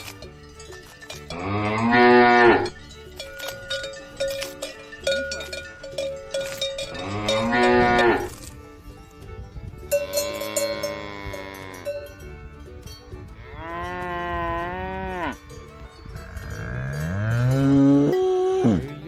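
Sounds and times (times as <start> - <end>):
cattle mooing: 1.3 - 2.7, 6.9 - 8.4, 13.4 - 15.4, 16.2 - 19.0.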